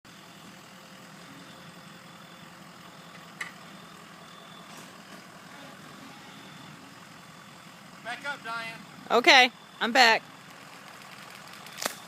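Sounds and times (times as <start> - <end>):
truck engine running: 0.1 - 12.0.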